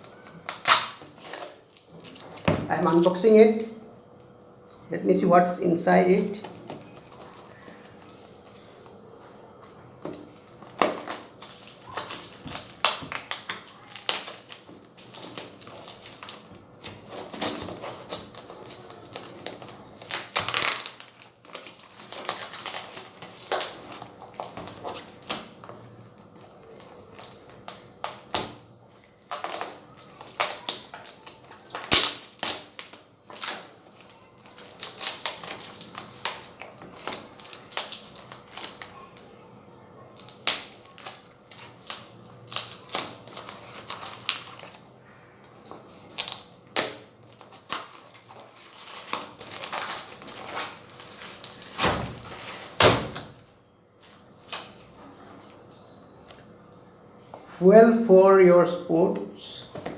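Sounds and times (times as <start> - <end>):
packaging being opened: 0.0 - 3.3, 6.2 - 9.0, 9.6 - 39.2, 40.2 - 45.2, 46.0 - 55.6.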